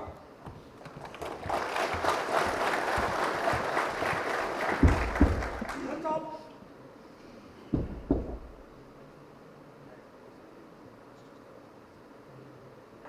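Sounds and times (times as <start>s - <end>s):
audience applauding: 0.8s - 6.2s.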